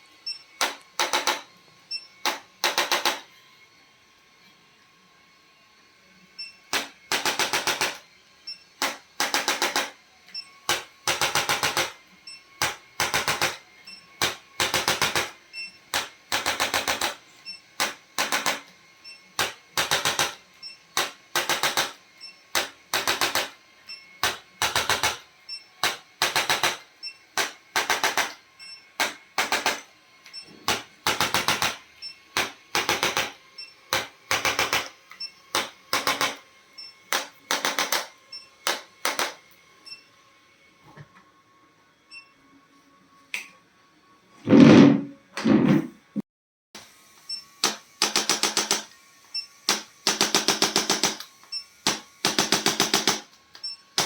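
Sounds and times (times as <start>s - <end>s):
rapid mechanical taps: 8.8s - 9.9s, 21.0s - 22.0s, 27.4s - 28.4s, 29.0s - 29.9s, 37.1s - 39.4s, 47.6s - 48.9s, 49.7s - 53.3s.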